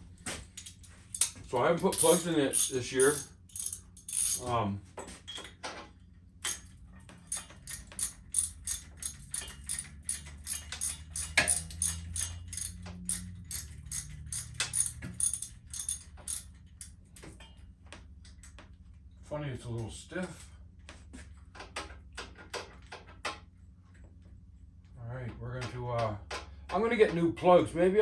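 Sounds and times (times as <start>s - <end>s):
ratchet wrench clicking: 0.5s - 4.6s, 6.4s - 17.0s.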